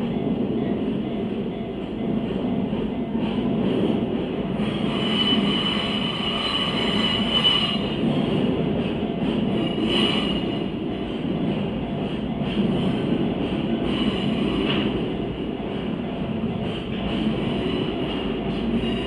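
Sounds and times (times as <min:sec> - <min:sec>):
high wheel squeal: 0:04.7 - 0:08.0.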